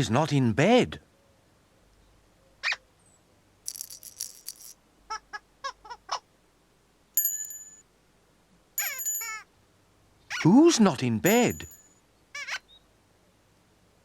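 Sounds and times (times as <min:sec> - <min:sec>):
shaking rattle: 0:03.7 - 0:04.8, 0:07.2 - 0:07.8, 0:08.8 - 0:09.4, 0:11.3 - 0:11.8
bright bell-like chime: 0:07.2 - 0:07.8, 0:08.8 - 0:09.4, 0:11.3 - 0:11.9.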